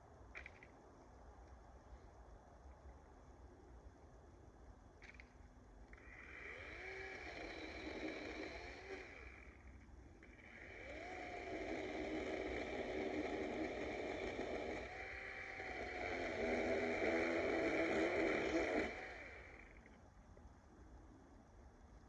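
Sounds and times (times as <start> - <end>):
electric chainsaw cutting wood: 5.9 - 19.9.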